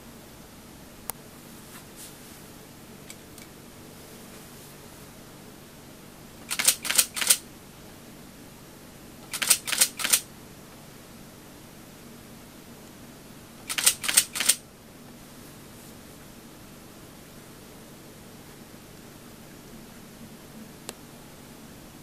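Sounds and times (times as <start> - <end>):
camera shutter clicks: 6.5 - 7.4, 9.3 - 10.2, 13.7 - 14.6.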